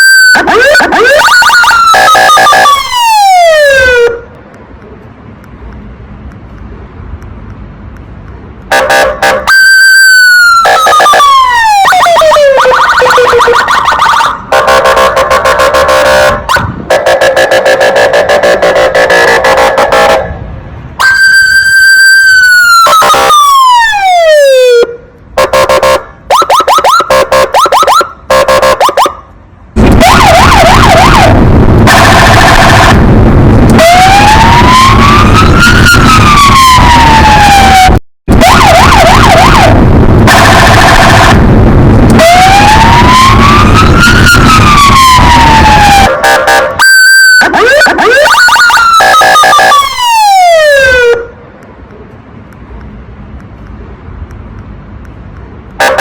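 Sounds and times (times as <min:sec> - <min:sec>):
police siren wailing and yelping: 0:00.0 - 0:04.3, 0:09.4 - 0:15.5, 0:21.0 - 0:25.0, 0:25.6 - 0:51.4
harsh noisy layer: 0:29.8 - 0:51.5.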